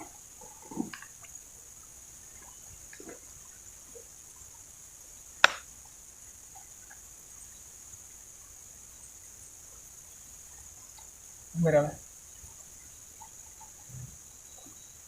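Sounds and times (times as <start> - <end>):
forest insects droning: 0.0 - 15.0
sharp knock: 5.4 - 5.6.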